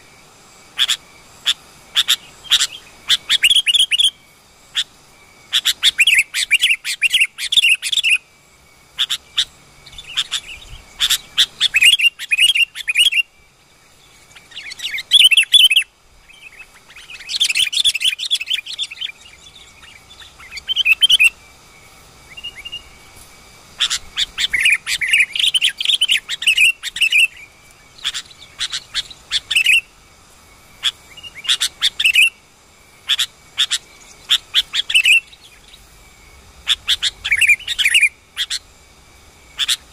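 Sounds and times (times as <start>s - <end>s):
birds chirping chatter: 0.7s - 8.2s, 8.9s - 32.4s, 33.0s - 38.7s.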